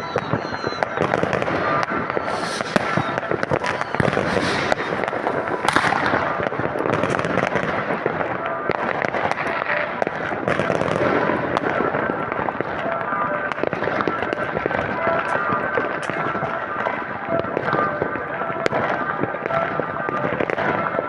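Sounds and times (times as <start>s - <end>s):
fireworks banging and crackling: 0.0s - 21.0s.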